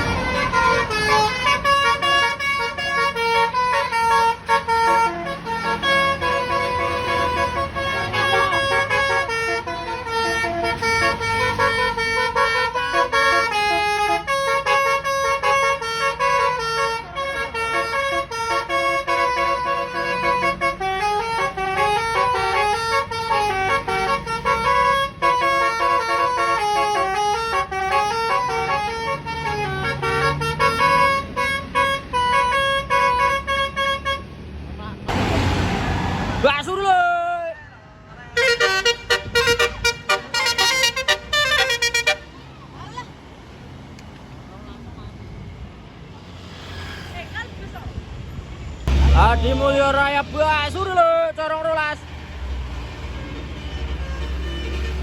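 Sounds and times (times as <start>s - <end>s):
bus horn playing melody: 0.0s - 34.4s, 38.3s - 42.4s, 52.8s - 55.0s
bus engine rumble: 0.0s - 55.0s.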